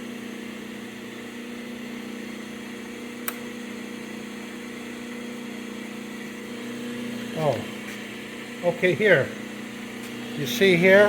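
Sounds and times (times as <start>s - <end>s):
electric motor humming: 0.0s - 11.0s
sharp click: 3.2s - 3.4s.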